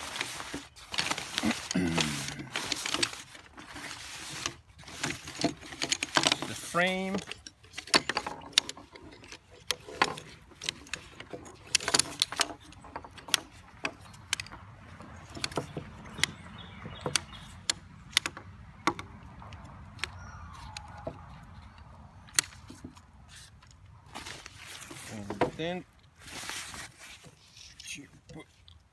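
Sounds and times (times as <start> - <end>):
chair frame clicks and clinks: 0.0 - 23.0.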